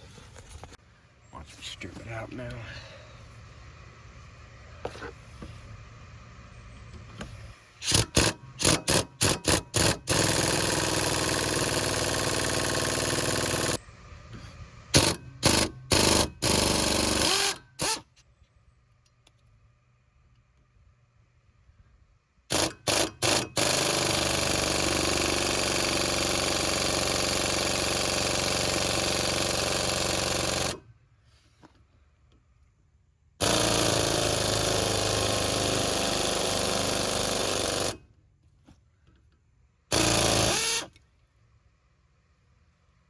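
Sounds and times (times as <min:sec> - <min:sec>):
power driver driving screw: 0:07.1 - 0:13.8, 0:15.0 - 0:18.2, 0:22.5 - 0:30.8, 0:33.4 - 0:38.0, 0:39.9 - 0:41.0.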